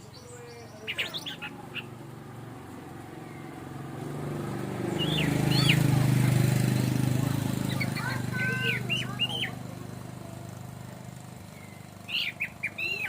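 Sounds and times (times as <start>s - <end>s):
bird chirping: 0.0s - 9.7s, 11.4s - 13.0s
bird whistled notes: 4.9s - 5.8s, 11.6s - 13.0s.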